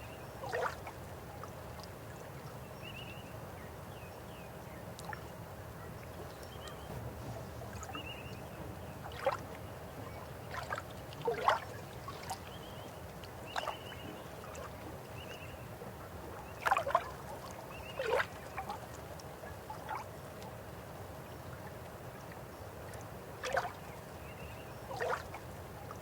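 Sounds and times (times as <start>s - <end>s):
river water running: 0.0s - 26.0s
water gurgles and plops: 6.6s - 19.1s, 24.9s - 26.0s.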